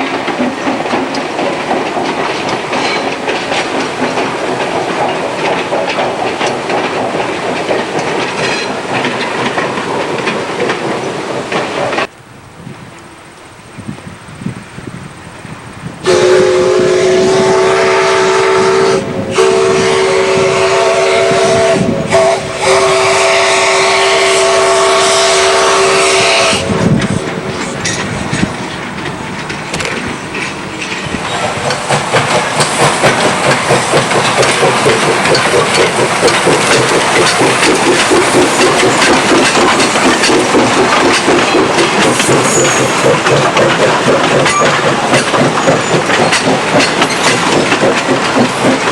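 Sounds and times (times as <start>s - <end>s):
steam locomotive chuffing: 0.0s - 12.1s, 15.0s - 48.9s
steam whistle blowing: 16.0s - 26.9s, 42.1s - 43.0s.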